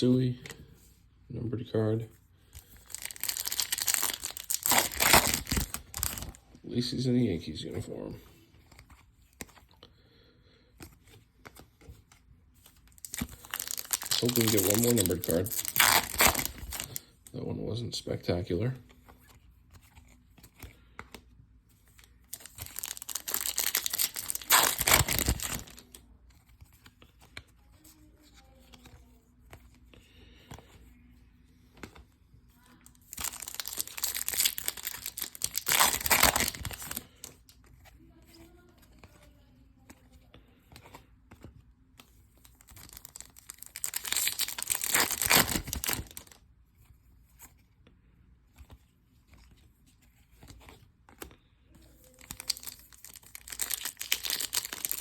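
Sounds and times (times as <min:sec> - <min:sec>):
wrapper tearing and crinkling: 0:02.8 - 0:06.4, 0:13.0 - 0:17.1, 0:22.3 - 0:26.0, 0:33.0 - 0:37.2, 0:42.6 - 0:46.4, 0:52.0 - 0:55.0.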